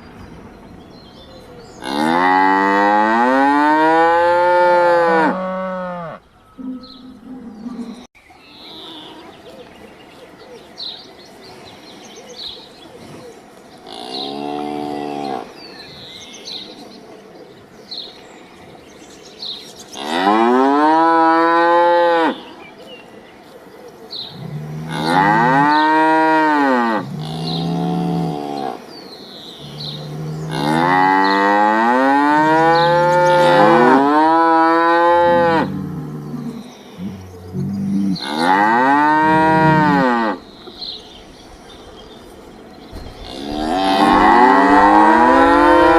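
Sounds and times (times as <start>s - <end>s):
faint birds chirping: 0.0s - 45.9s
cattle mooing: 1.8s - 8.1s, 24.4s - 28.8s, 29.6s - 40.4s, 43.2s - 45.9s.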